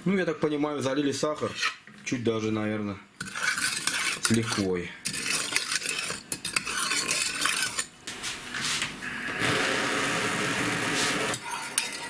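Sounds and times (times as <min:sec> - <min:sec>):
metal spoon scraping in a pan: 0:01.3 - 0:01.8, 0:03.2 - 0:07.9, 0:11.0 - 0:12.0.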